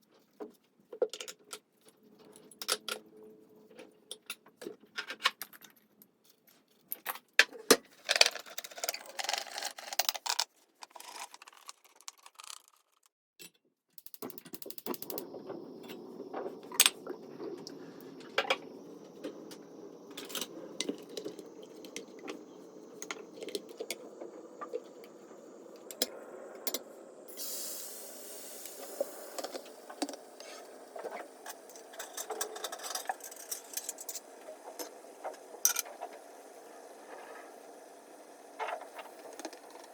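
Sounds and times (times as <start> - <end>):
hiss: 14.7 - 39.9
steady hum: 14.9 - 39.9.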